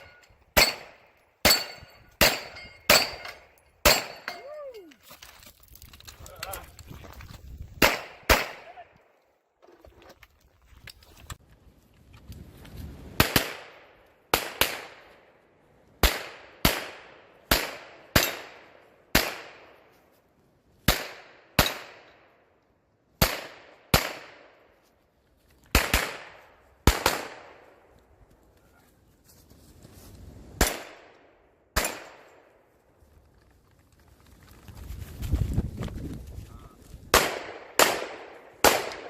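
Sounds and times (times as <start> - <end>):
pistol shots echoing: 25.8 - 27.6, 31.8 - 32.3, 37.1 - 39.0.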